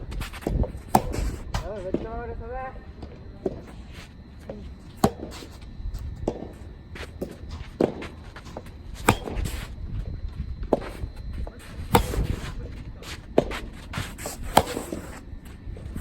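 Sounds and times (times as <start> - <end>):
shoes moving on court: 0.0 - 2.2, 2.9 - 16.0
wind rumbling on microphone: 0.0 - 3.4, 5.5 - 16.0
rackets hitting ball: 0.4 - 2.1, 4.4 - 9.8, 10.6 - 15.5.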